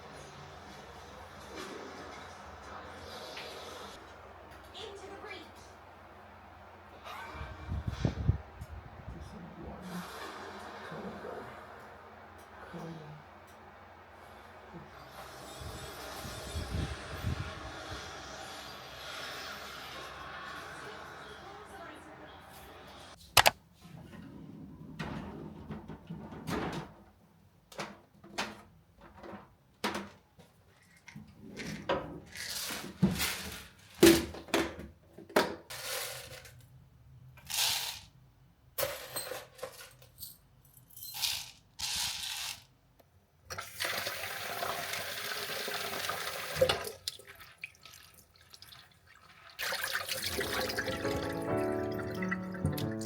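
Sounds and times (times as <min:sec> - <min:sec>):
tap water running: 0:43.5 - 0:53.0.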